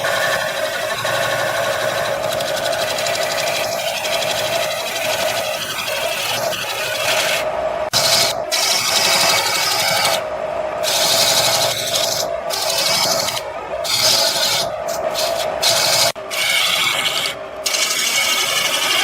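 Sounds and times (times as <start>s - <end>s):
lathe motor hum: 0.0s - 19.0s
tool scraping spinning wood: 0.0s - 19.0s.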